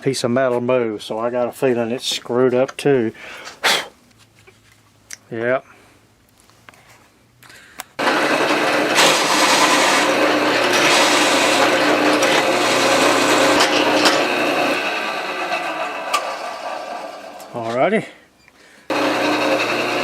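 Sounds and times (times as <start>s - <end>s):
power drill motor hum: 8.0s - 17.6s, 18.9s - 20.0s
cutter scraping sheet metal: 8.0s - 17.8s, 18.9s - 20.0s.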